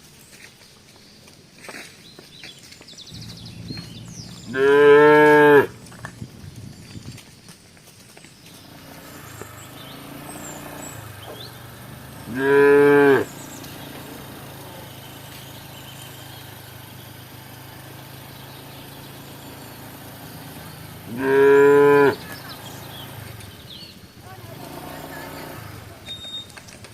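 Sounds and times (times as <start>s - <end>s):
low hum: 3.1s - 7.4s
cow mooing: 3.2s - 6.2s, 12.1s - 13.8s, 21.0s - 22.4s.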